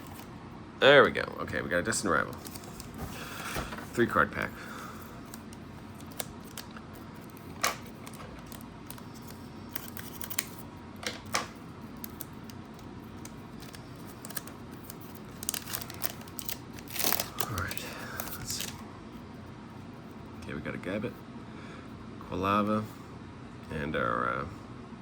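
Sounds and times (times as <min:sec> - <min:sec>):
foil wrapper crinkling: 0:02.2 - 0:04.1, 0:04.8 - 0:10.6, 0:11.6 - 0:18.8
cards clicking: 0:05.2 - 0:18.8.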